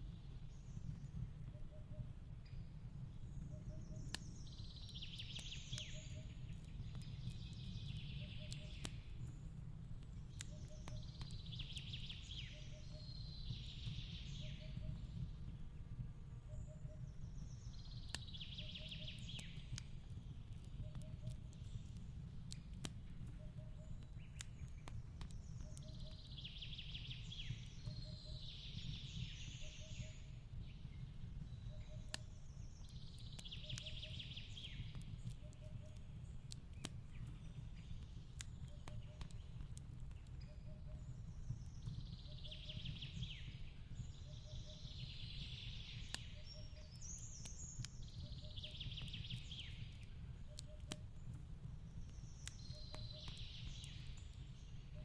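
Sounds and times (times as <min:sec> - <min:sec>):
wood fire crackling and popping: 0:00.0 - 0:55.0
birds chirping: 0:23.2 - 0:55.0.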